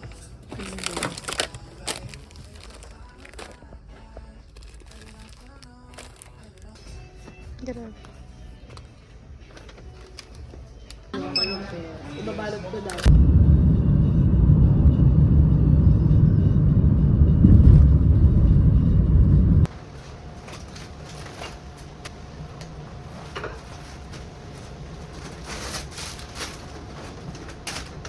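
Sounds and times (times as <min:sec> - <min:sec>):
loud low rumble: 0:13.0 - 0:19.7.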